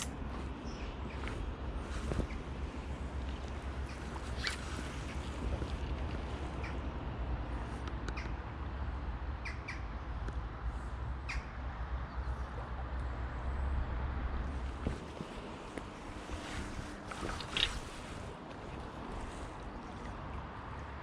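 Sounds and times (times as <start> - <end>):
rushing river water: 0.0 - 7.4, 14.5 - 21.0
wind rumbling on microphone: 0.0 - 21.0.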